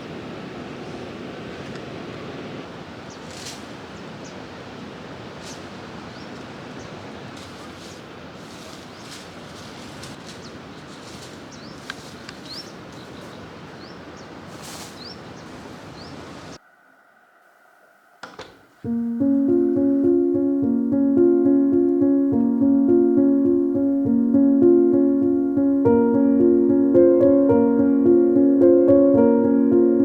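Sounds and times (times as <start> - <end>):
high rising bird chirps: 15.0 - 18.9.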